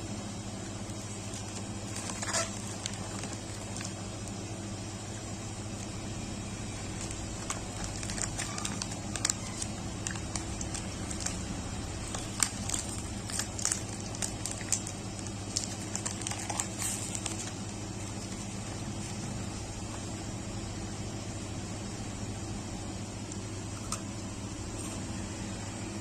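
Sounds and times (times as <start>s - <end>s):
steady low hum: 0.0s - 26.0s
plastic packaging crinkling: 0.4s - 20.0s.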